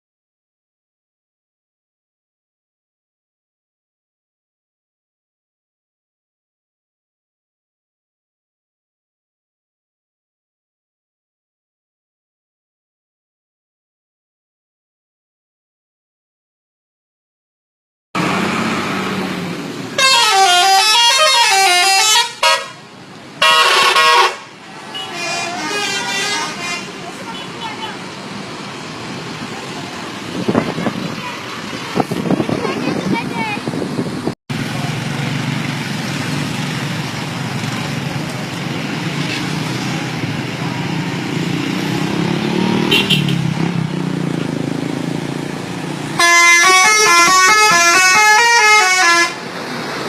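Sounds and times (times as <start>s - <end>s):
bus engine rumbling: 18.2s - 50.0s
street traffic noise: 18.2s - 50.0s
multi-tone air horn melody: 20.0s - 22.8s, 23.4s - 27.0s, 46.2s - 49.4s.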